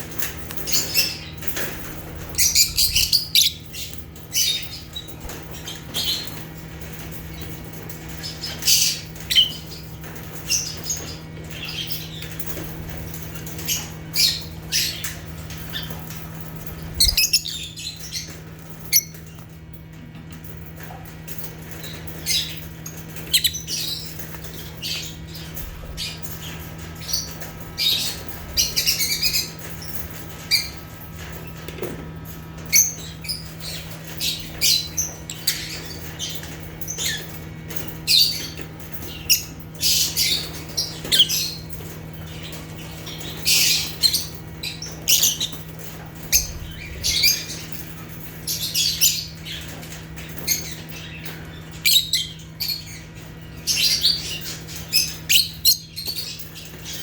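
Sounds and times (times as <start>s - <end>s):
lovebirds chirping and squawking: 0.0s - 57.0s.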